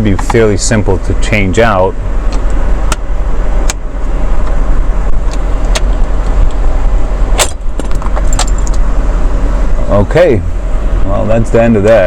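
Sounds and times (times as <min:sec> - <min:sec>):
low hum: 0:00.0 - 0:12.0.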